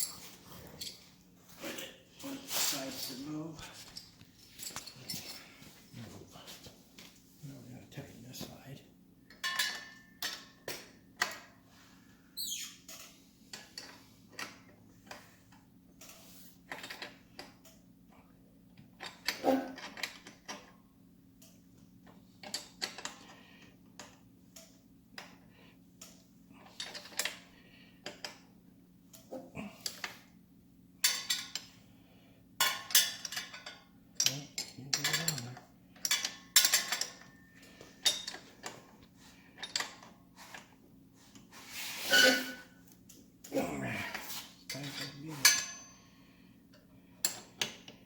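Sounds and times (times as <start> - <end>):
wrench clinking on metal nuts: 44.8 - 46.0.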